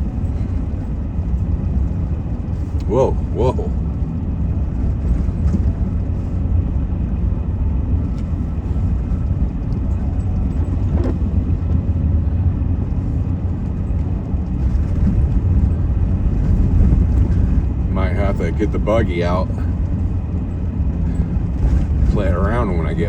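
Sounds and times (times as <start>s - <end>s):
vehicle engine and tyre rumble: 0.0s - 23.0s.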